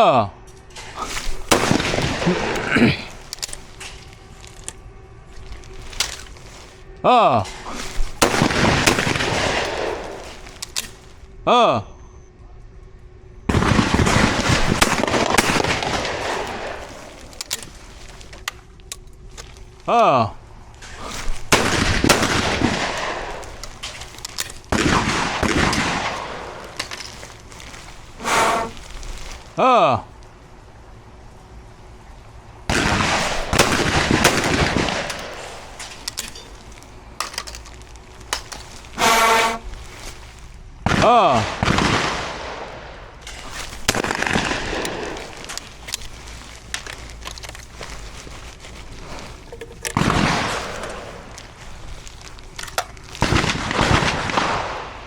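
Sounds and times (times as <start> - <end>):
echoing shotgun shot: 0.8 - 3.2, 7.5 - 10.4, 13.5 - 17.4, 21.3 - 24.0, 24.6 - 26.9, 32.7 - 35.8, 40.9 - 43.2, 43.8 - 45.5, 53.2 - 55.0
shotgun shot echoing: 0.8 - 3.2, 7.5 - 10.4.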